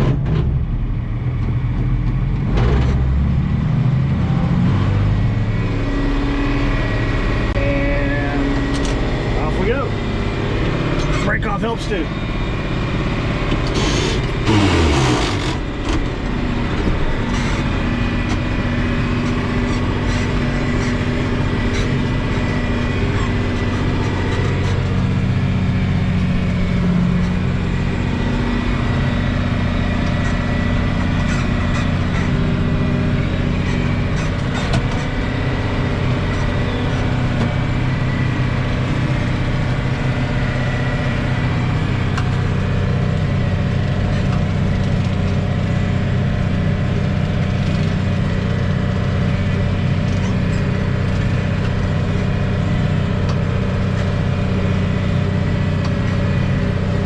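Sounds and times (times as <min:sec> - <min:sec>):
tractor engine running: 0:00.0 - 0:57.0.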